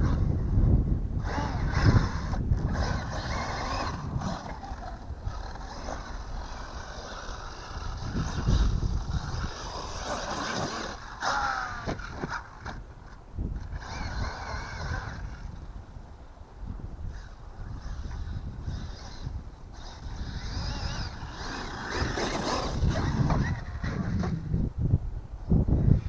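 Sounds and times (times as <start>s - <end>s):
electric motor whining: 0.0s - 24.7s
tyre and drivetrain noise: 0.0s - 24.8s.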